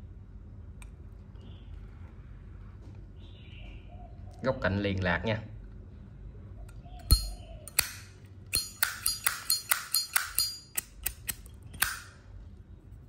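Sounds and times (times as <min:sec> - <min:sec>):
lighter lid clicking: 0:08.6 - 0:12.1.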